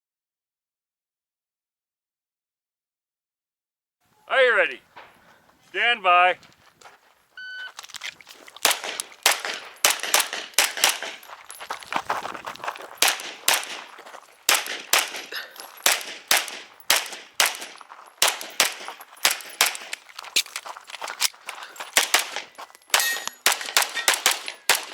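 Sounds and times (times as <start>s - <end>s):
pistol shots cracking: 8.6s - 11.6s, 12.9s - 20.5s, 21.7s - 24.9s.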